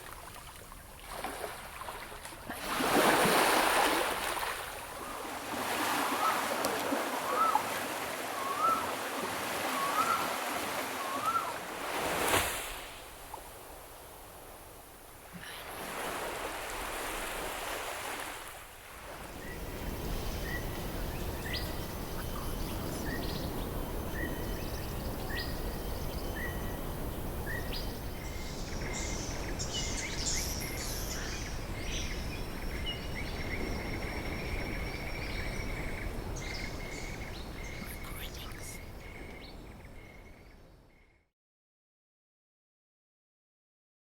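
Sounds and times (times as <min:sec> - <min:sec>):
bird chirping: 0:19.4 - 0:40.4.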